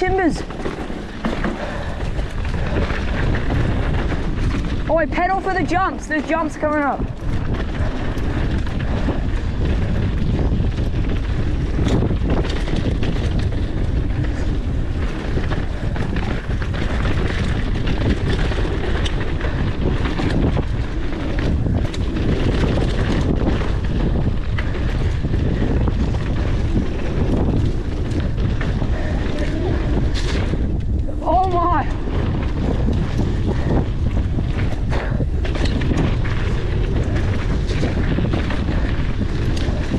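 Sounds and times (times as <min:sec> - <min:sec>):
bike knocks and rattles: 0:00.0 - 0:39.9
bike tyre noise: 0:00.0 - 0:39.9
wind over microphone: 0:00.0 - 0:39.9.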